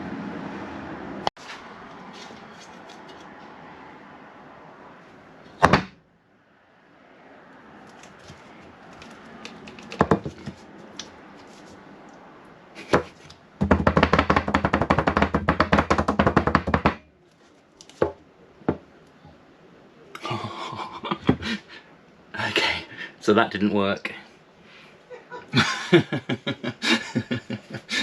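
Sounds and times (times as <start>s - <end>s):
knocking on a metal tin: 13.6s - 17.0s.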